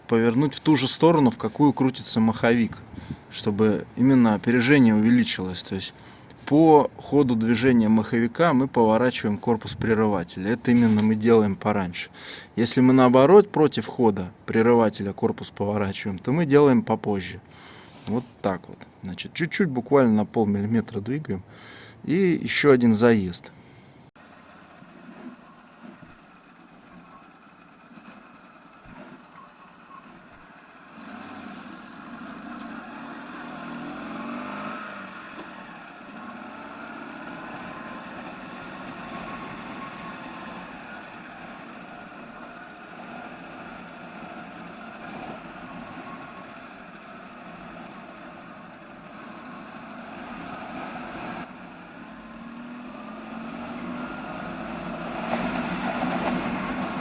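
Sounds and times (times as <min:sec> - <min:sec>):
motorcycle engine accelerating: 0:24.2 - 0:57.0.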